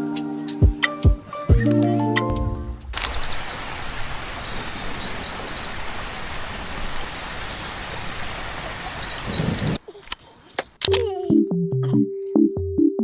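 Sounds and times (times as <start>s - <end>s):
rain or rushing water hiss: 2.3s - 9.8s
songbird chirping: 2.3s - 9.8s.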